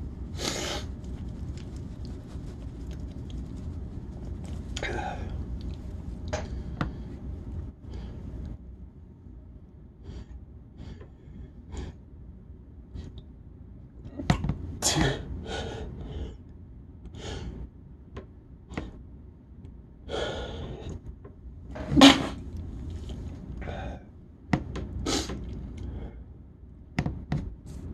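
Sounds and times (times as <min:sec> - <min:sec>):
person sneezing: 0:14.8 - 0:15.3, 0:21.8 - 0:22.4.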